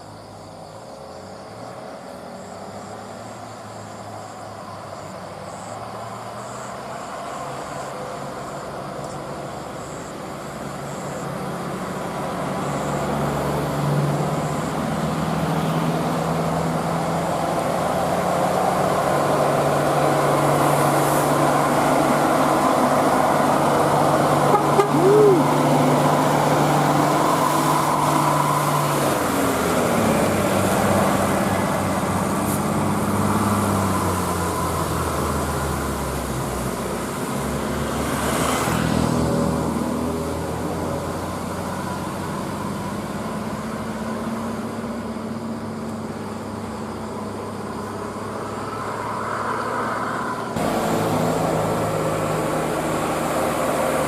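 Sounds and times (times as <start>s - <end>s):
bus engine running: 0.0s - 38.2s, 38.9s - 54.0s
bus horns sounding: 24.3s - 25.6s.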